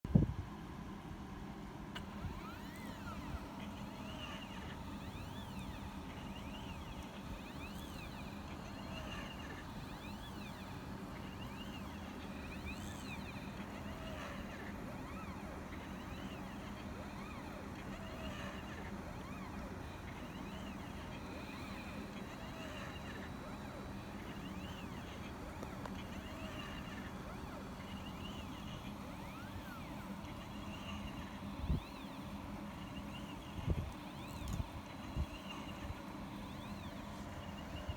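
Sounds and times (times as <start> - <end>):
steady low hum: 1.6 - 37.9
stepper motors whining: 1.9 - 37.9.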